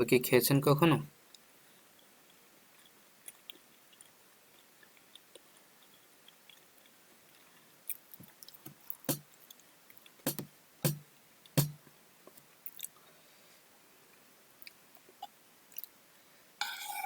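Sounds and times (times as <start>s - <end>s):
chewing mouth clicks and smacks: 2.3s - 10.2s, 12.6s - 13.0s, 15.7s - 15.9s.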